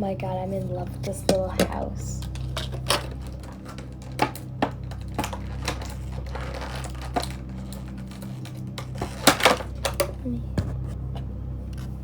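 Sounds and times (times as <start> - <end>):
low hum: 0.0 - 12.0
plastic toy pieces clicking: 2.2 - 10.2
packaging crinkle: 2.2 - 10.4.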